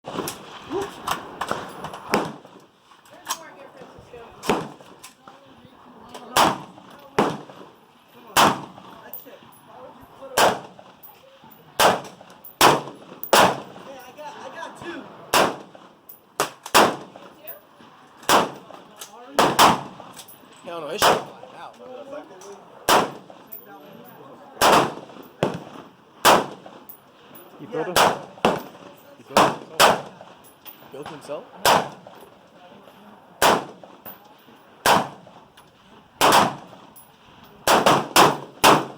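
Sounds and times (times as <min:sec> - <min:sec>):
rifle shots with echo: 0:00.1 - 0:02.6, 0:04.4 - 0:05.0, 0:06.2 - 0:07.6, 0:08.3 - 0:09.2, 0:10.3 - 0:11.1, 0:11.8 - 0:14.0, 0:15.3 - 0:17.3, 0:18.2 - 0:18.8, 0:19.4 - 0:20.3, 0:21.0 - 0:21.5, 0:22.8 - 0:23.6, 0:24.6 - 0:27.0, 0:27.8 - 0:30.4, 0:31.6 - 0:32.3, 0:33.4 - 0:34.1, 0:34.8 - 0:35.5, 0:36.2 - 0:37.0, 0:37.6 - 0:38.9.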